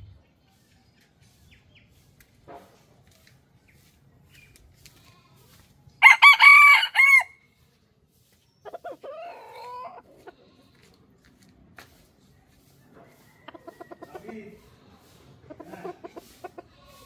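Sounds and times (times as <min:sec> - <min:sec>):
rooster crowing: 0:06.0 - 0:07.4.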